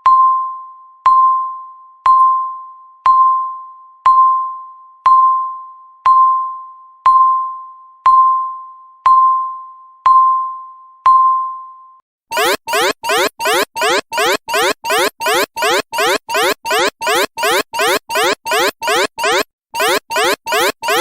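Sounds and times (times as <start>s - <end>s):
countdown timer ding: 12.3s - 21.0s.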